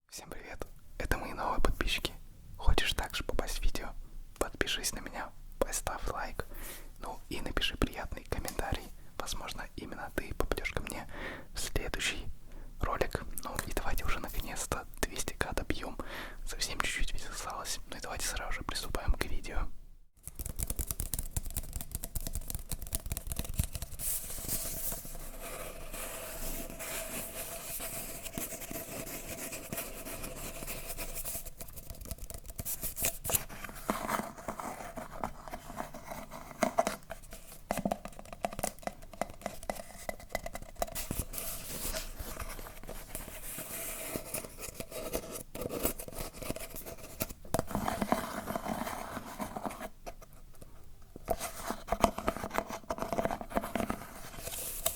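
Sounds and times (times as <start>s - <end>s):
hands scratching and rubbing object: 20.2s - 50.3s, 51.2s - 54.9s.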